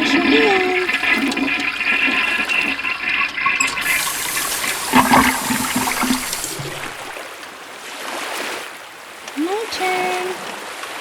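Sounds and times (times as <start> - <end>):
toilet flush water rushing: 0.0 - 7.2.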